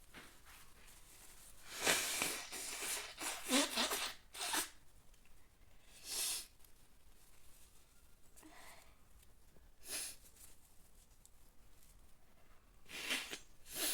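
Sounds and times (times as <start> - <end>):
person sniffing through nose: 1.6 - 4.8, 5.9 - 6.5, 9.8 - 10.2, 12.9 - 13.9.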